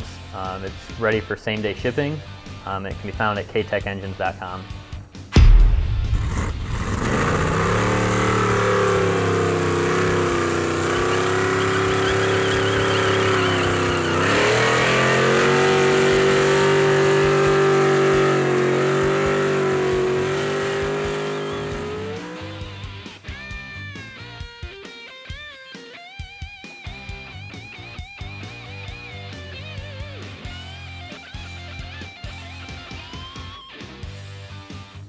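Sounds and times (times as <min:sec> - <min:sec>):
car engine running hard: 0:05.4 - 0:23.0.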